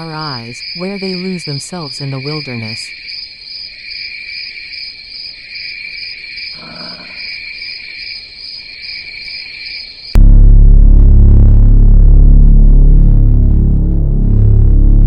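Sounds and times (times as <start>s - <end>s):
crickets trilling: 0.0s - 10.2s.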